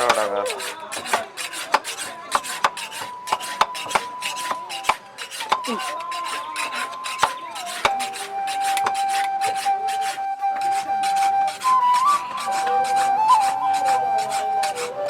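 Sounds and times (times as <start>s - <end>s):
hand tools striking metal: 0.0s - 15.0s
flute playing long notes: 3.1s - 4.9s, 5.5s - 15.0s.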